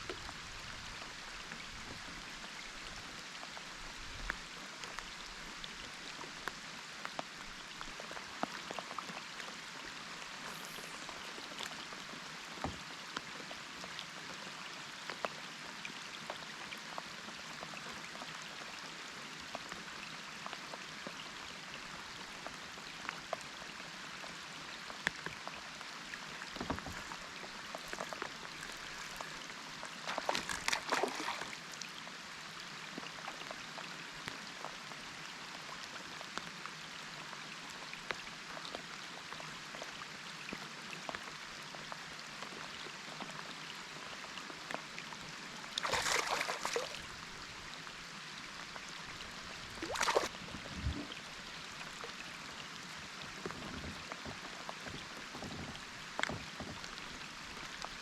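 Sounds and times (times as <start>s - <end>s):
steady water noise: 0.0s - 58.0s
water splashes: 26.0s - 32.0s, 45.4s - 58.0s.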